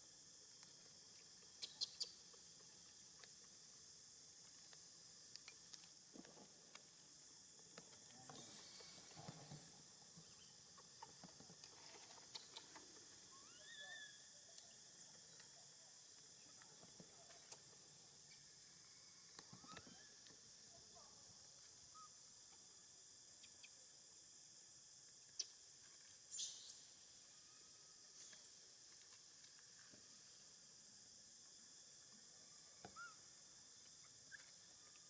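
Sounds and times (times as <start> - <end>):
steady high hiss: 17.4 - 35.0.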